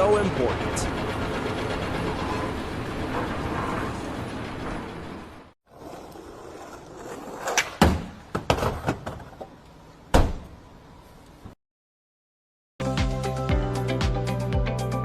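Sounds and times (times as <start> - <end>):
hard objects knocking and thudding: 7.8 - 9.5.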